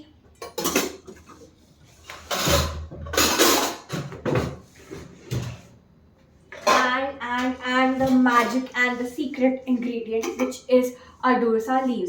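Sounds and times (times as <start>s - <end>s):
rustling scrapes: 4.6s - 5.8s.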